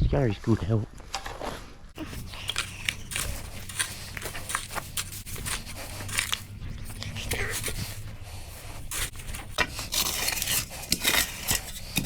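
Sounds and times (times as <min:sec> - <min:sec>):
crunching scrapes: 0:00.4 - 0:12.0
steady low hum: 0:01.8 - 0:12.0.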